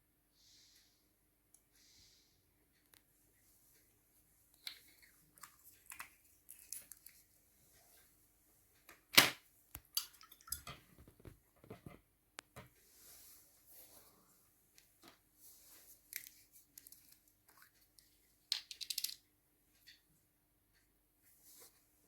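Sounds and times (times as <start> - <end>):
small clicks taps and rustles: 2.8 - 3.2, 4.5 - 8.2, 8.8 - 12.8, 15.9 - 20.1.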